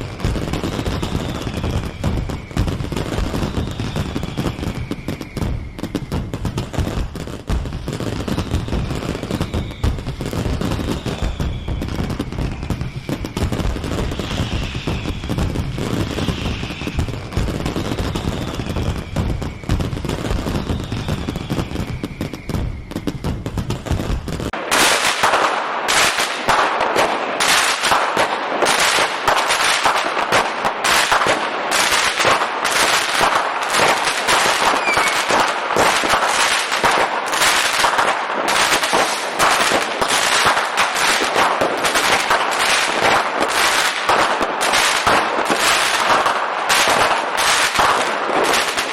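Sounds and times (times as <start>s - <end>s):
falling whistles: 0.0s - 6.4s, 8.3s - 23.5s, 33.4s - 37.9s
fireworks crackling and bangs: 0.0s - 48.9s
sharp cracks: 24.5s - 48.9s.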